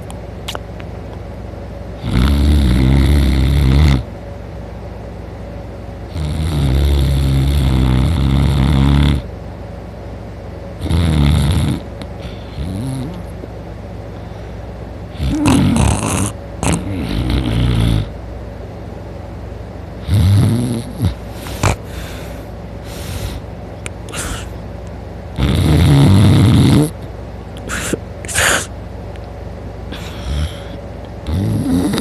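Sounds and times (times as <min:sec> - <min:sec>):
man snoring loudly: 0:02.0 - 0:04.1, 0:06.1 - 0:09.3, 0:10.8 - 0:13.2, 0:15.1 - 0:18.1, 0:20.0 - 0:22.4, 0:24.1 - 0:24.5, 0:25.4 - 0:27.0, 0:29.9 - 0:32.0.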